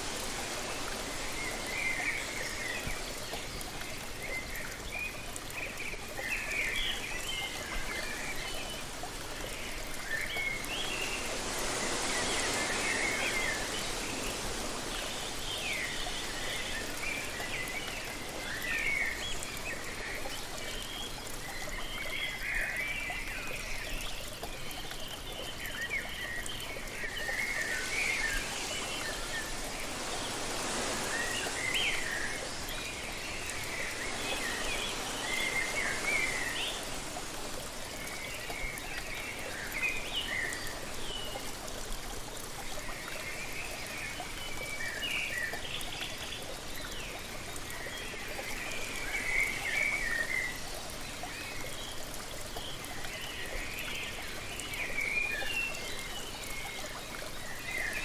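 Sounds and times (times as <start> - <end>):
waterfall rushing: 0.0 - 4.5, 7.7 - 20.0, 26.2 - 42.0
birds chirping: 25.6 - 40.5.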